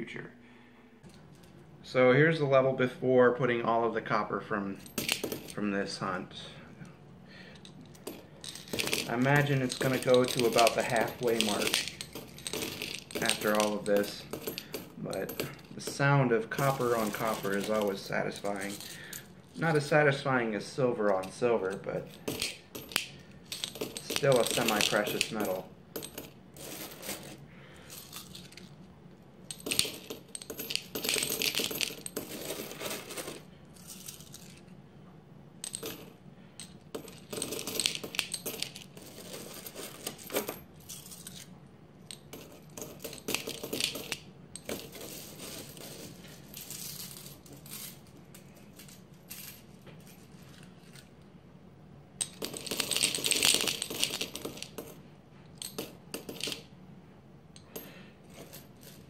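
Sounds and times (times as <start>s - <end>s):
coins poured into glass jar: 8.0s - 19.8s, 22.1s - 28.7s, 29.5s - 34.6s, 35.7s - 41.4s, 42.4s - 49.6s, 52.2s - 55.0s, 55.6s - 56.6s.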